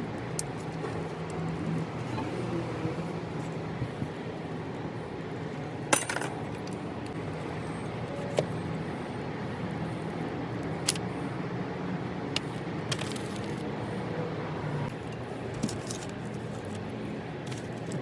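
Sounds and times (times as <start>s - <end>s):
metallic clink: 5.9s - 6.4s.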